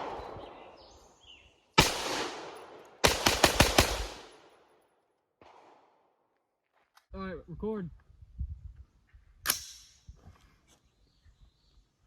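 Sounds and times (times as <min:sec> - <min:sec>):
rifle shots: 0:00.0 - 0:00.8, 0:01.8 - 0:04.6, 0:05.4 - 0:06.0.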